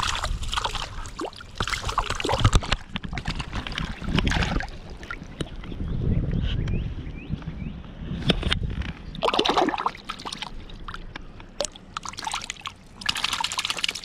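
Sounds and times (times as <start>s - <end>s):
fish splashing in river water: 0.0s - 5.3s, 9.2s - 11.0s, 11.6s - 14.0s.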